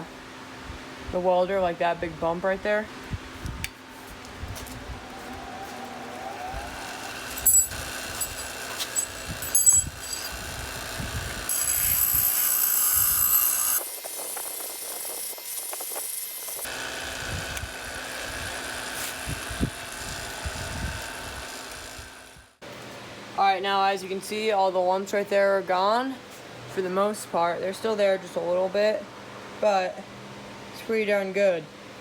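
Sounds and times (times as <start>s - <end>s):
bench grinder grinding steel: 5.0s - 22.5s.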